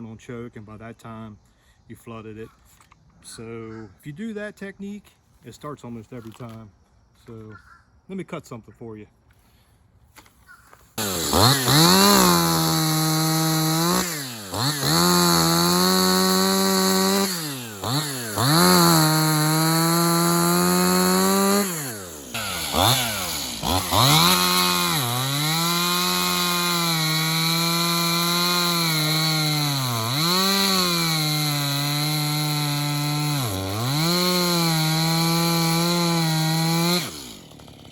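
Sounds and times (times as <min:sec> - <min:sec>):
chainsaw cutting wood: 0:10.9 - 0:37.9.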